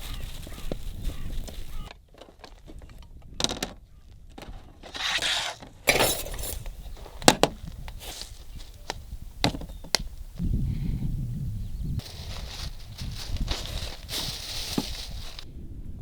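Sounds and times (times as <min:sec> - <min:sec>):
short rustling: 0:12.0 - 0:15.5.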